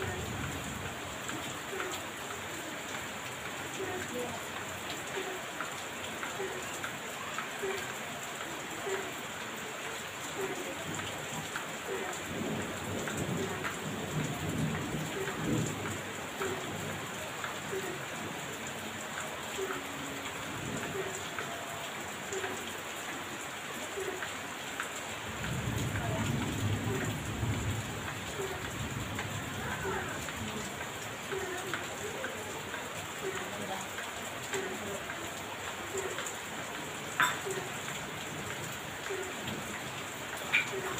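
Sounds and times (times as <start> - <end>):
heavy rain falling: 0.0 - 40.9
thunder rumbling: 12.0 - 17.1, 25.2 - 30.7.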